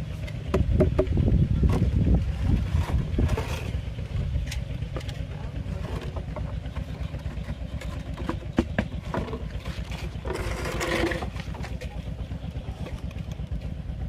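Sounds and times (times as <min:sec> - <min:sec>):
small engine running: 0:00.0 - 0:14.0
knocks and clatter: 0:00.2 - 0:03.8, 0:04.4 - 0:12.0.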